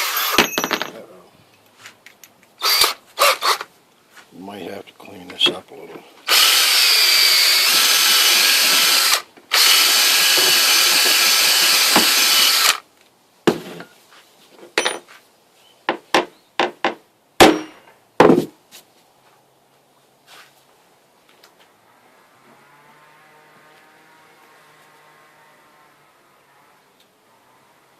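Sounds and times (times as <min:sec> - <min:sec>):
handheld power tool running: 0:02.6 - 0:03.6, 0:06.3 - 0:12.8.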